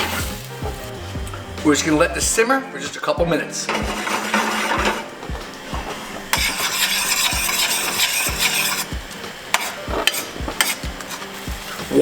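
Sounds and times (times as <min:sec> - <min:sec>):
sauce sizzling in a pan: 0:00.0 - 0:12.0
utensil clicking against pan: 0:06.3 - 0:11.4.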